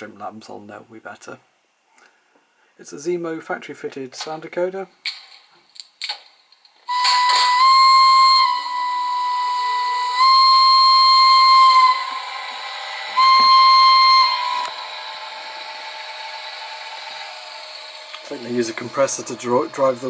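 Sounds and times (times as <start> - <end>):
faint air hiss: 0.0 - 5.9
locomotive whistle blasts: 6.9 - 16.8.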